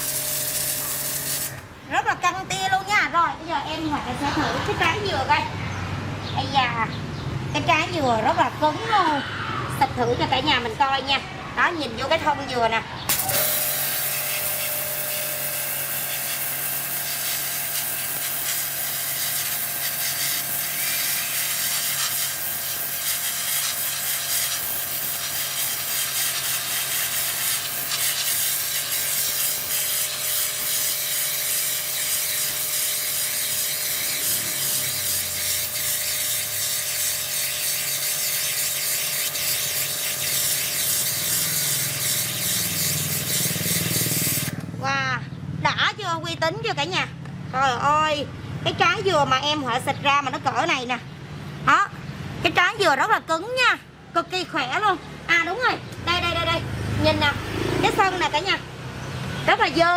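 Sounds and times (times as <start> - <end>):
high-pressure water jet hissing: 0.0 - 1.6, 13.1 - 44.6
pressure washer motor humming: 0.0 - 1.7, 13.1 - 44.6.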